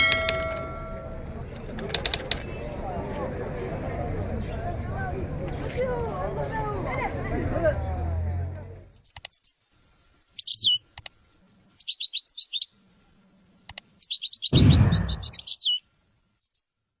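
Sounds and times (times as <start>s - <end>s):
finches chirping and trilling: 10.3s - 10.8s, 11.8s - 12.8s, 14.0s - 15.8s, 16.4s - 16.7s
low rumbling noise: 14.5s - 15.5s.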